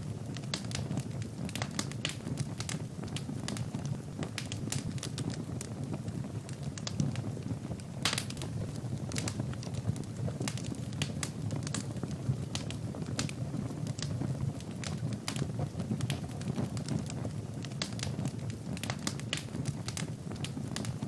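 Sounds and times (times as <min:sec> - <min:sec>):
fire crackling and popping: 0:00.0 - 0:21.0
wood fire burning: 0:00.0 - 0:21.0.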